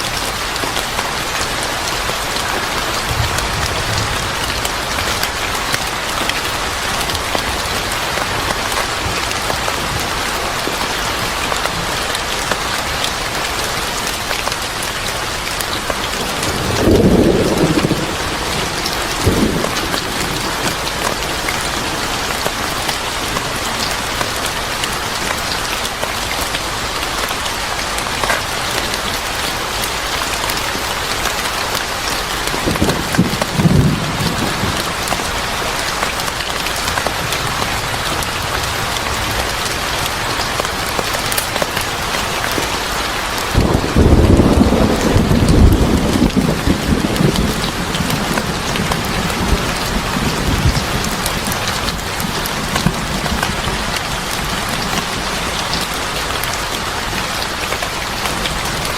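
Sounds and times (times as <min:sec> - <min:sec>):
heavy rain falling: 0:00.0 - 0:58.9
low thunder rumbling: 0:02.7 - 0:10.2, 0:16.0 - 0:23.4, 0:32.5 - 0:35.6, 0:43.3 - 0:55.9.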